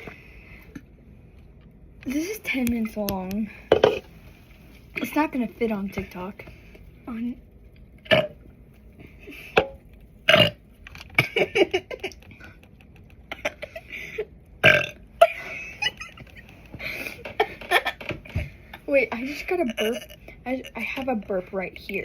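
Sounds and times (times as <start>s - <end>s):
girl burping: 14.6s - 15.0s, 19.6s - 20.2s.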